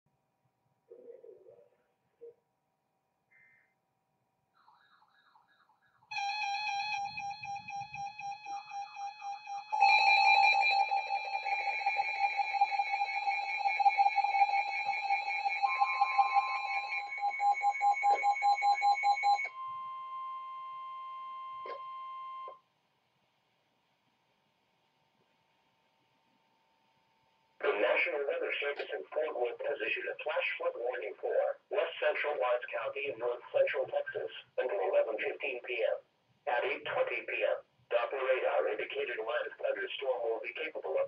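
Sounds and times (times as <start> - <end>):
steady two-tone signal: 4.6 - 22.6.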